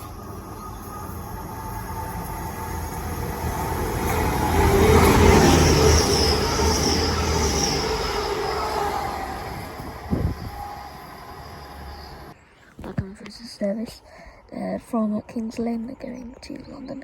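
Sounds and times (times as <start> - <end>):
diesel train passing: 0.0 - 12.4
wheels squealing: 0.0 - 12.4.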